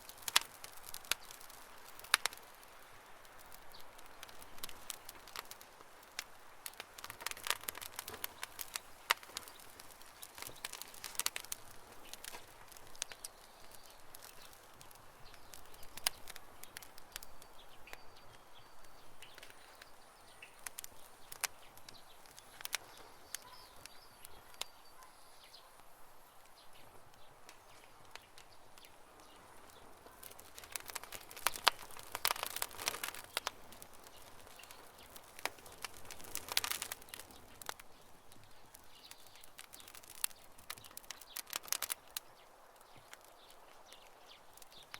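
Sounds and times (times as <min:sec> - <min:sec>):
campfire crackling: 0:00.0 - 0:44.9
faint bird chirps: 0:12.8 - 0:44.9.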